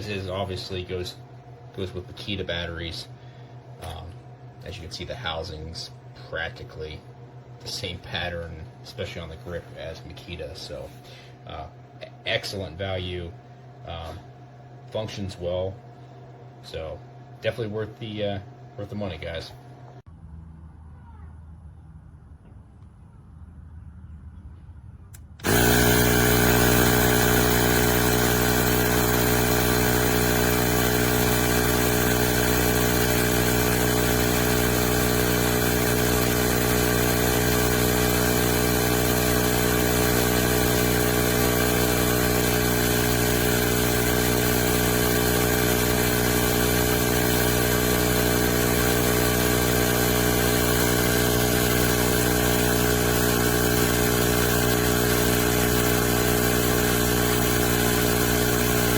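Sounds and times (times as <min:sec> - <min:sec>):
tire inflator compressor droning: 0:25.2 - 0:58.9.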